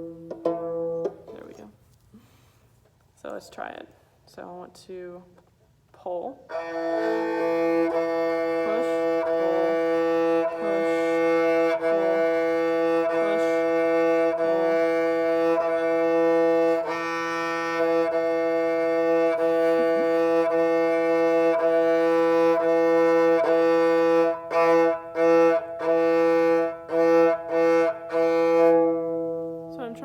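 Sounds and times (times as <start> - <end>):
bowed strings: 6.5 - 30.0.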